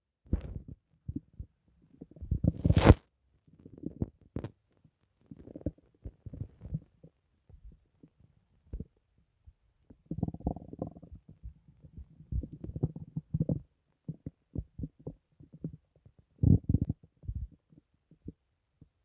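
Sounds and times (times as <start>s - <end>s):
stomach gurgling and rumbling: 0.3s - 19.0s.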